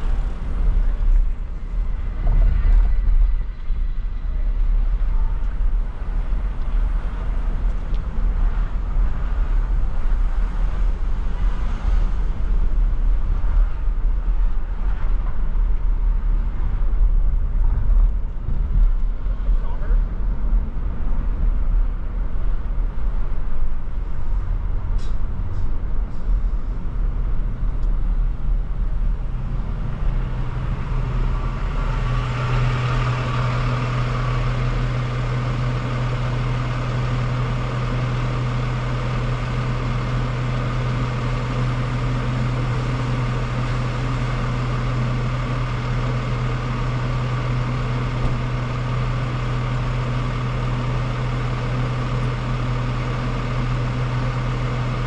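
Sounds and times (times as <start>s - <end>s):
loud steady low hum: 0.0s - 55.0s
road and engine noise: 0.0s - 55.0s.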